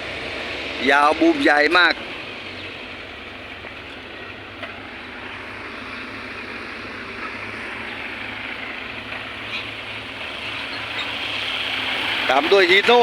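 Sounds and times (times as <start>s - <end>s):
heavy diesel engine running: 0.0s - 13.0s.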